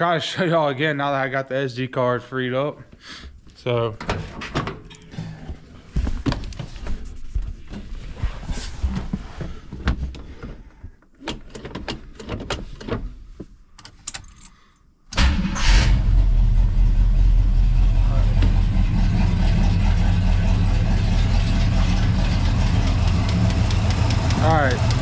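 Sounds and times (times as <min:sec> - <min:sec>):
engine starting and running: 0:15.1 - 0:25.0
engine lifter tapping: 0:21.0 - 0:25.0.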